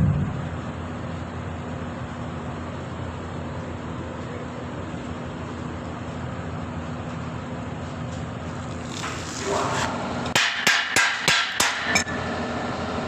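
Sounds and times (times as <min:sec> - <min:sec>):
steady machine hum: 0:00.0 - 0:13.0
metallic hammer strikes: 0:10.3 - 0:12.2.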